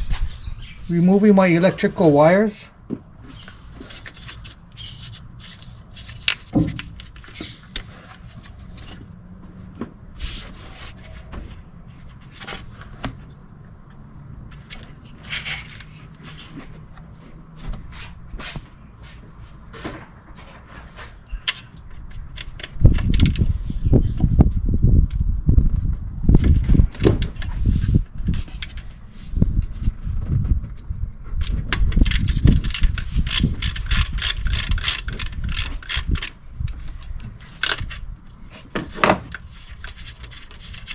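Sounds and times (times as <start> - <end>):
hand tools clicking and scraping: 31.5 - 40.9.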